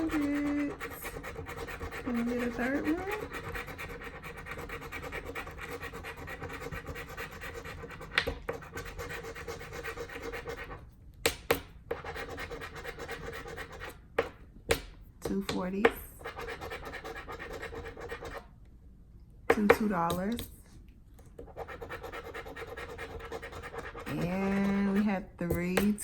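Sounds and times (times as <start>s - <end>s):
fingernails scratching lottery ticket: 0.0s - 10.8s, 11.9s - 14.0s, 16.2s - 18.5s, 21.4s - 26.0s.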